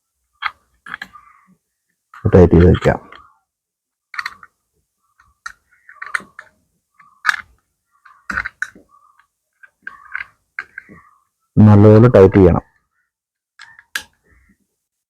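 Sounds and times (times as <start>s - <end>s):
hand tool clicking on nut: 4.1s - 4.5s.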